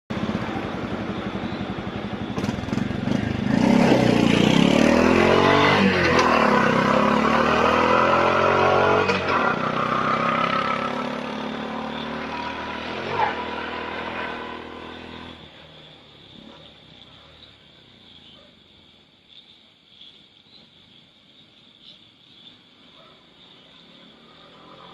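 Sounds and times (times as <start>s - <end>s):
rickshaw engine accelerating: 0.1s - 17.0s.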